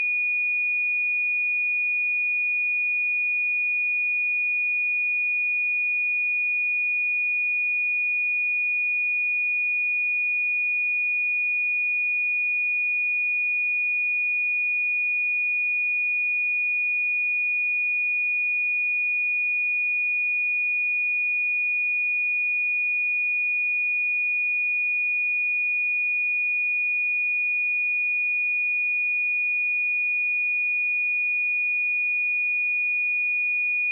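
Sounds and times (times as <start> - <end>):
high-pitched sine-wave test tone: 31.6 - 33.9.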